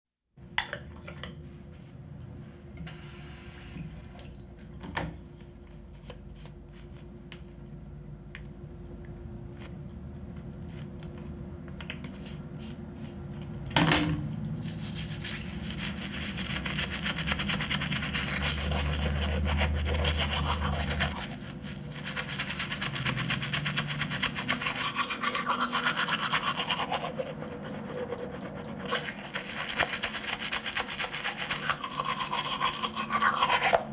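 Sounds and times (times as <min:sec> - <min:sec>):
toothbrush scrubbing teeth: 0:14.6 - 0:33.9.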